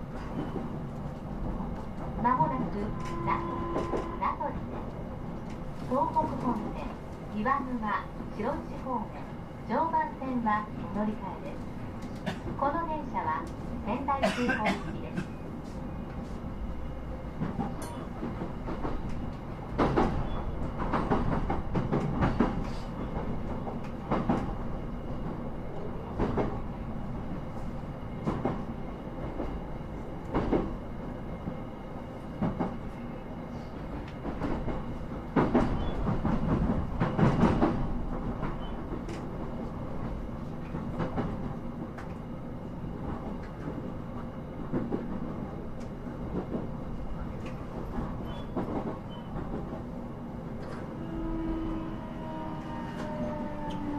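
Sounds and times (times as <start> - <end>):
train wheels rumbling on rail: 0.0 - 53.9.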